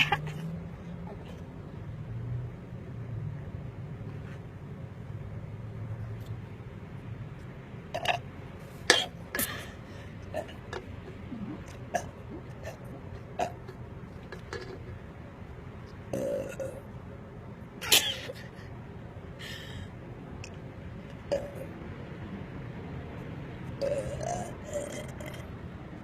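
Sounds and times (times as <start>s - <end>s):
woman burping: 16.1s - 16.8s.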